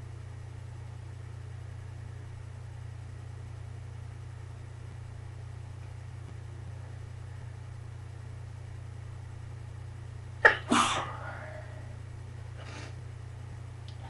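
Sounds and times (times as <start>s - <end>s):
steady low hum: 0.0s - 14.0s
person sneezing: 10.4s - 11.6s.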